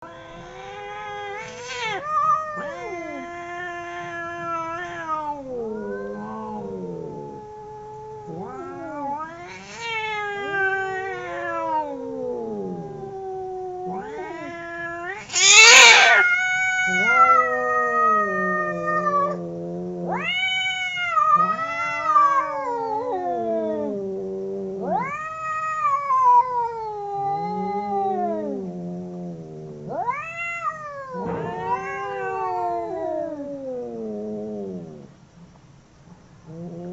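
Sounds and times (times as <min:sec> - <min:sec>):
cats caterwauling: 0:00.0 - 0:35.1.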